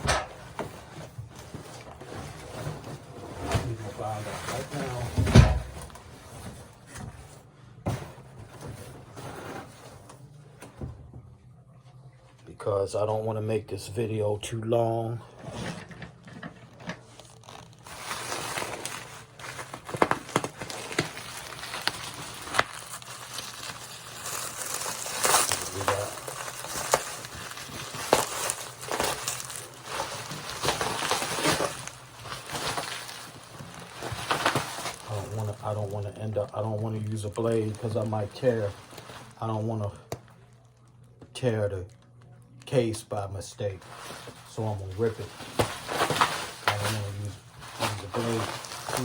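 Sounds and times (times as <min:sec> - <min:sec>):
packaging rustling: 0:15.6 - 0:41.0, 0:43.8 - 0:49.0.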